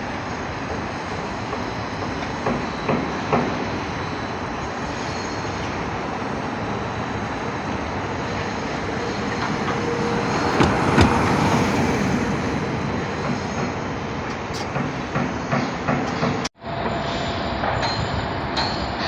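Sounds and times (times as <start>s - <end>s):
construction machinery rumble: 2.4s - 16.4s
sharp metal knocks: 8.5s - 11.6s.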